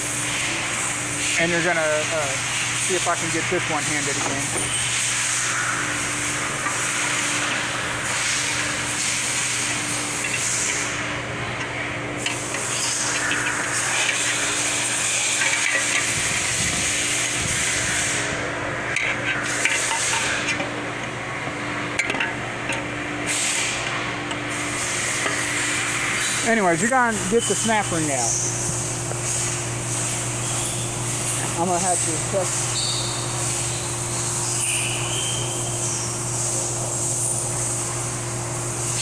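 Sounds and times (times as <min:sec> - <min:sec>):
hand tools scraping on metal: 0:12.2 - 0:17.4.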